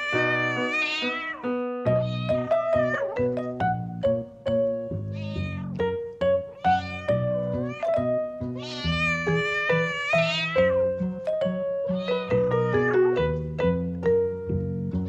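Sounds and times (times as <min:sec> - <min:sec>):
cat meowing: 0:00.0 - 0:03.6, 0:05.0 - 0:11.1, 0:11.9 - 0:13.4.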